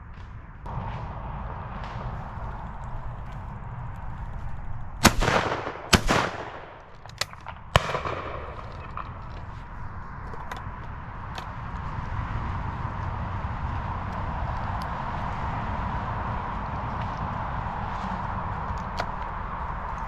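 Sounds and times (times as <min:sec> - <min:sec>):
wind rumbling on microphone: 0:00.0 - 0:20.0
shotgun shots: 0:05.0 - 0:09.4
faint distant shots: 0:05.0 - 0:09.8.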